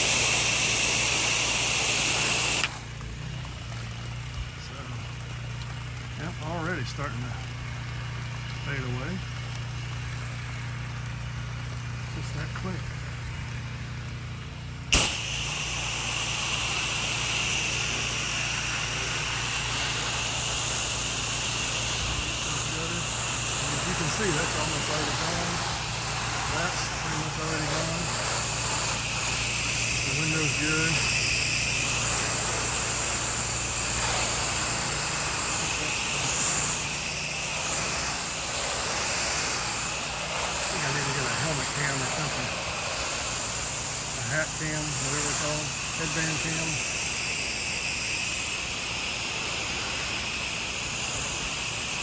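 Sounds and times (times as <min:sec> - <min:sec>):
water spray hissing: 0:00.0 - 0:11.6, 0:14.9 - 0:52.0
pressure washer engine running: 0:00.0 - 0:52.0.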